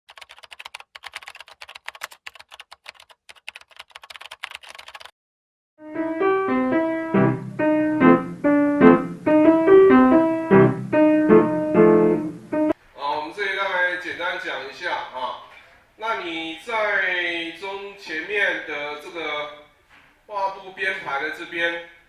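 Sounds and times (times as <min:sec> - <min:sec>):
quiet rapid clicking: 0:00.1 - 0:05.1
piano-like keyboard melody: 0:05.8 - 0:12.8.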